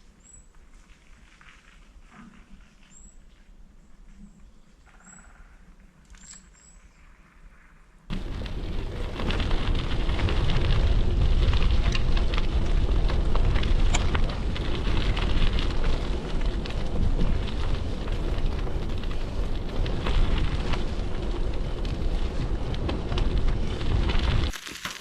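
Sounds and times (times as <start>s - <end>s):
crackles: 0.0s - 25.0s
bird chirps: 4.4s - 7.2s
wind buffeting microphone: 8.1s - 24.5s.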